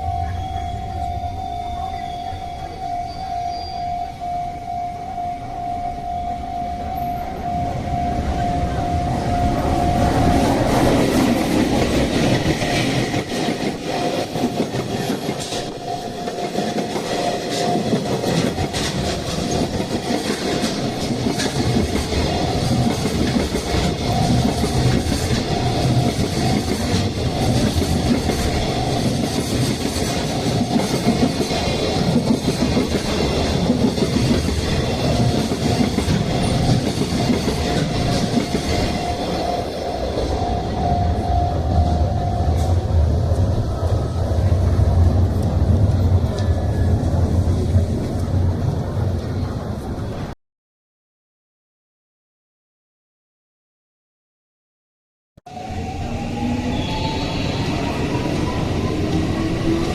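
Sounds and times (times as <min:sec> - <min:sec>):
crossing bell pulsing warning tone: 0:00.0 - 0:44.6
train wheels clacking on rail joints: 0:09.4 - 0:39.3.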